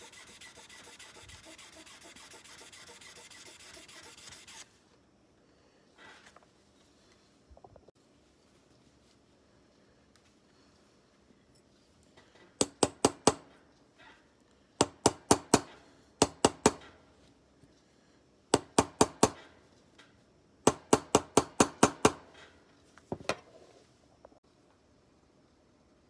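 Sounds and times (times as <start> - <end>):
small hammer tapping metal: 12.2 - 13.5, 14.8 - 17.0, 18.6 - 19.5, 20.7 - 22.4.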